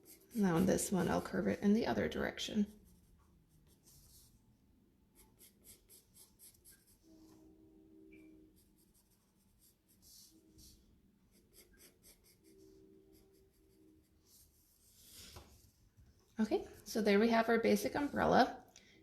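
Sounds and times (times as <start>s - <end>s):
pencil scratching on paper: 0.0s - 4.4s, 5.2s - 7.2s, 8.6s - 15.2s.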